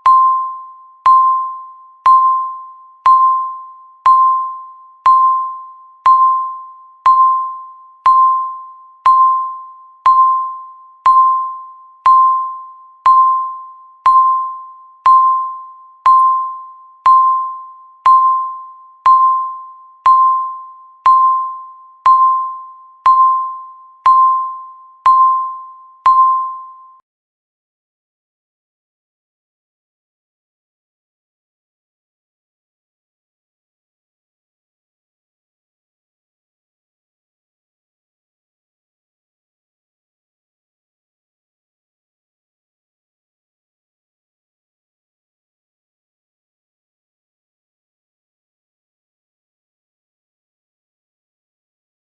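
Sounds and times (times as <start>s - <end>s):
timer beeping ding: 0.0s - 27.0s.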